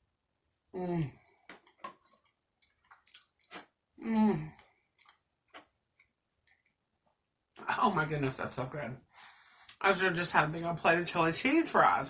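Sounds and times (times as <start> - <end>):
wet chewing smacks: 2.6 - 3.8.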